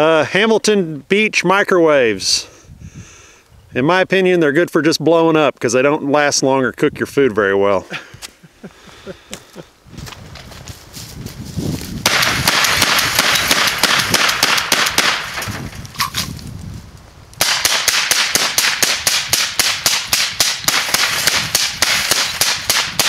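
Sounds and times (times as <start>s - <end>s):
rapid sharp cracks: 12.0s - 16.3s, 17.4s - 23.0s.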